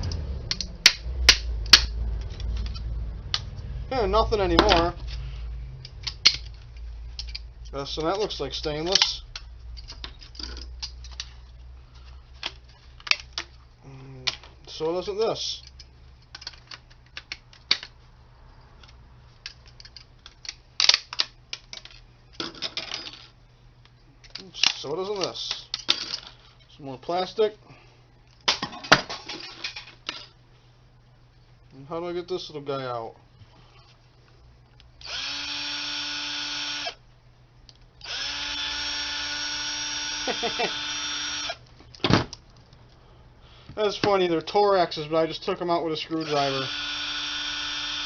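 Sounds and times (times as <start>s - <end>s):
small parts clicking and clattering: 5.8s - 13.6s, 15.5s - 18.0s, 18.8s - 26.6s
electric screwdriver motor whine: 35.0s - 37.0s, 38.0s - 41.6s, 46.2s - 48.0s.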